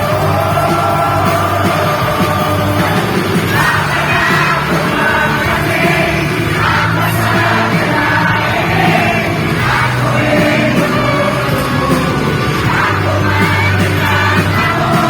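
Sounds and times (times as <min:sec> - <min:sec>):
concert crowd: 0:00.0 - 0:15.0
live pop rock band with vocals: 0:00.0 - 0:15.0.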